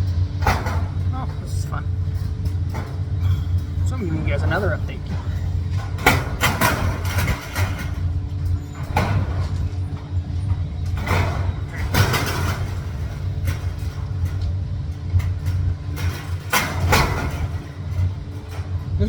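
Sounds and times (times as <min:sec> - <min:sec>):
low mechanical hum: 0:00.0 - 0:19.0
sharp knocks and clatters: 0:00.0 - 0:19.0.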